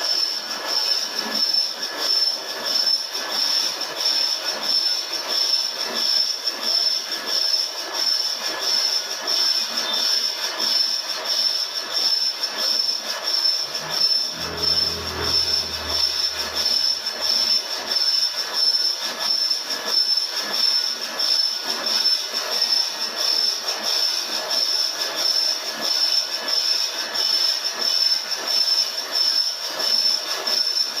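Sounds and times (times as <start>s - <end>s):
metal cutting scrape: 13.5s - 17.9s
lathe tool squealing: 13.6s - 17.9s
low hum: 13.6s - 18.0s.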